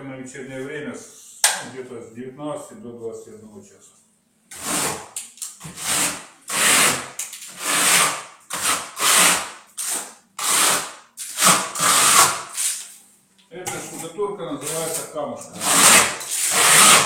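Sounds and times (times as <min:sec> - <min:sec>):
trowel scraping plaster: 0:04.5 - 0:13.0, 0:13.8 - 0:17.0.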